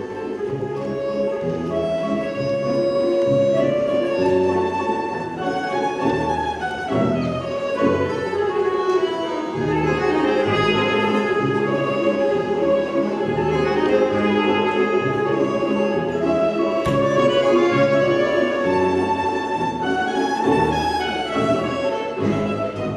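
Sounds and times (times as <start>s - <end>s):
orchestral string music: 0.0s - 22.9s.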